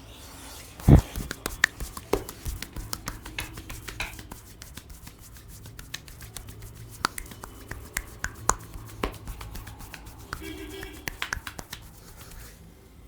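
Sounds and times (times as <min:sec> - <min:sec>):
hand snaps and clicks: 0:05.8 - 0:11.9.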